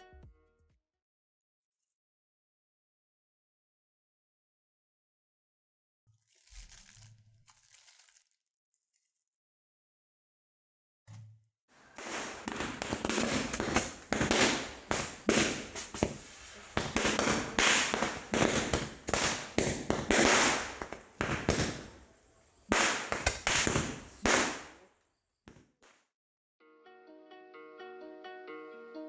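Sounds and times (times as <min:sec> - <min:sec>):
firecrackers banging: 0:11.8 - 0:24.8.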